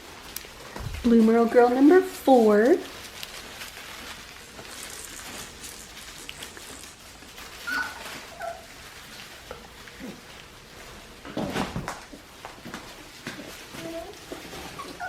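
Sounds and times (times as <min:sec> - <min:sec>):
soft rustling and clicks: 0:00.2 - 0:15.0
puppies squeaking: 0:04.4 - 0:09.0, 0:13.8 - 0:15.0.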